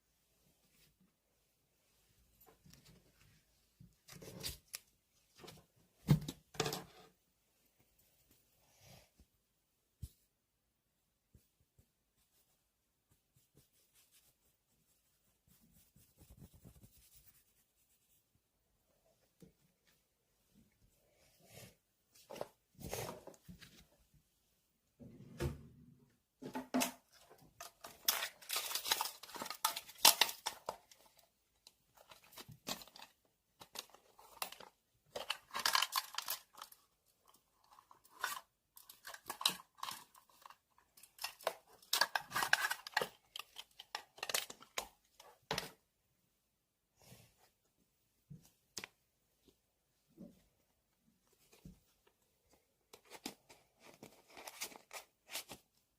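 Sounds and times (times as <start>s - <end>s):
scratchy tearing and rustling: 27.3s - 45.2s, 52.9s - 55.7s.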